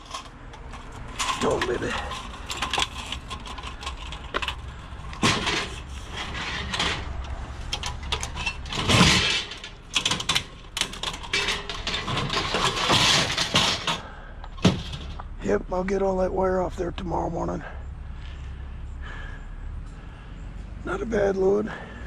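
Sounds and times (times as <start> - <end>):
scrap metal clanking and rattling: 0.0 - 15.4.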